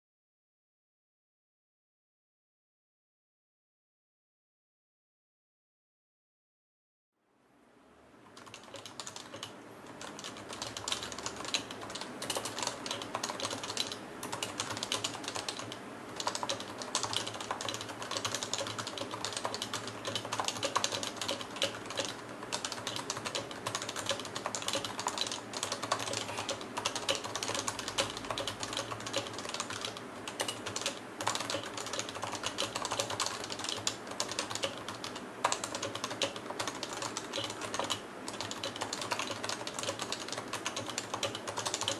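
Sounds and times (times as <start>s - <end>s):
fast typing on a keyboard: 8.4s - 41.9s.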